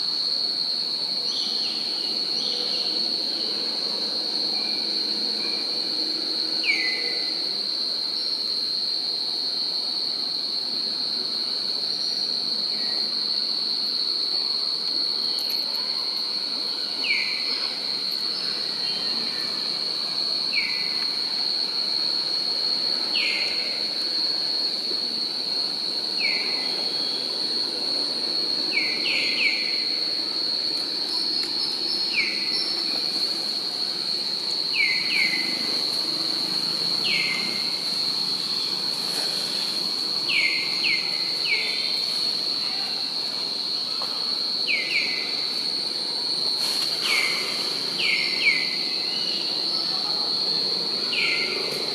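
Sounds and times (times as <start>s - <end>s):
high-pitched insect drone: 0.0s - 51.9s.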